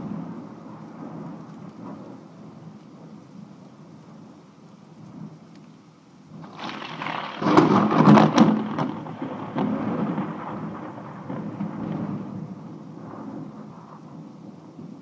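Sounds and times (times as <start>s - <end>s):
thunder crashing and rumbling: 6.4s - 15.0s.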